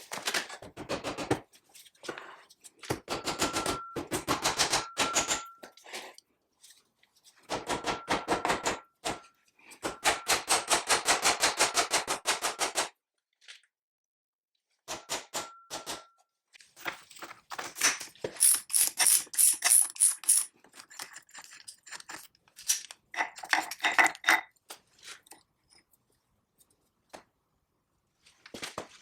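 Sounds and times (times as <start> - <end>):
hand tools clicking on metal: 18.4 - 24.2.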